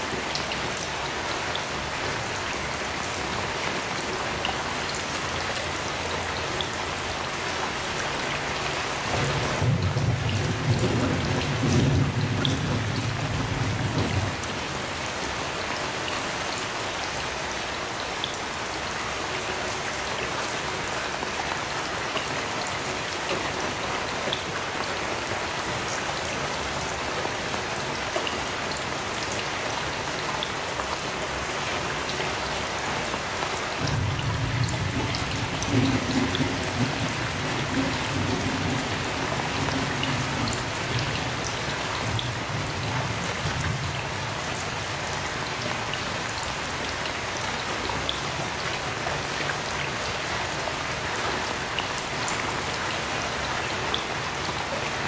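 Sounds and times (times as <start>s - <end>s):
heavy rain falling: 0.0s - 55.0s
distant thunder rumbling: 9.1s - 14.8s, 33.8s - 45.0s.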